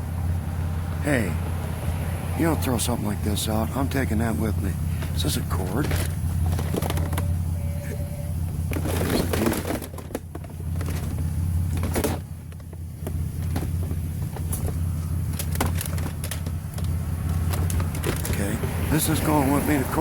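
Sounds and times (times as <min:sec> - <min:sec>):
low engine rumble: 0:00.0 - 0:20.0
junk being handled: 0:04.8 - 0:18.9.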